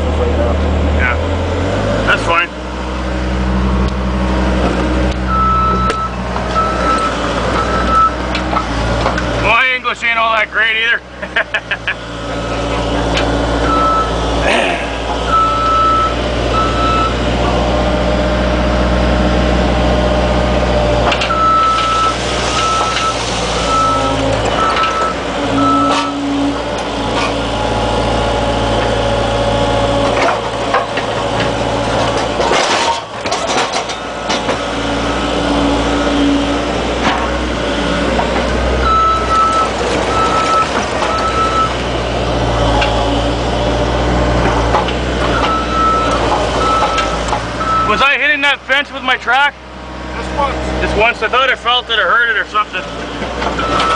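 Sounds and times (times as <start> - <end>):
excavator diesel engine running: 0.0 - 53.9
reversing alarm beeping: 5.3 - 8.2, 13.6 - 14.2, 15.3 - 17.2, 21.3 - 26.6, 38.8 - 41.8, 45.3 - 48.1, 53.6 - 53.9
metal clanks: 30.0 - 34.7.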